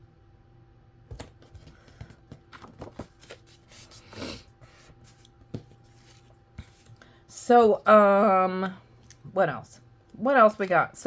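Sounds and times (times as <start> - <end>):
paper rustling: 1.2 - 7.0.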